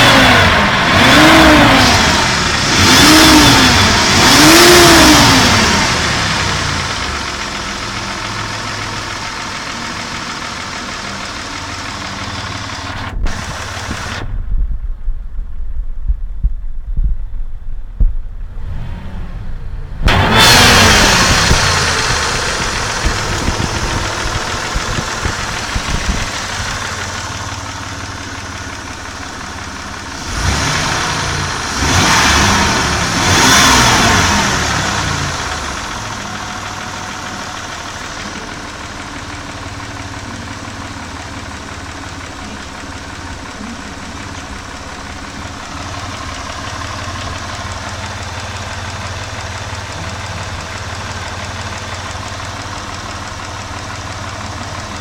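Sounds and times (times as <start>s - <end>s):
engine revving: 0.0s - 14.3s, 18.4s - 55.0s
engine idling with a knock: 21.4s - 29.8s.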